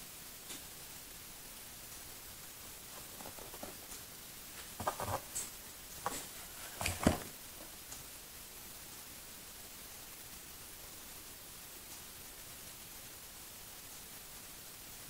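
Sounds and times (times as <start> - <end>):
steady hiss: 0.0 - 15.0
packaging rustling: 2.8 - 7.7.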